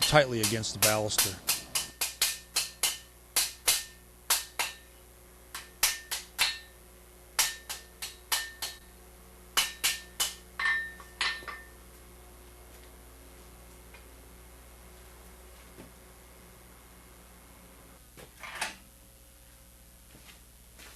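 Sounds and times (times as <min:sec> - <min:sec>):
hammer striking hot steel: 0:00.0 - 0:08.9, 0:09.5 - 0:11.8.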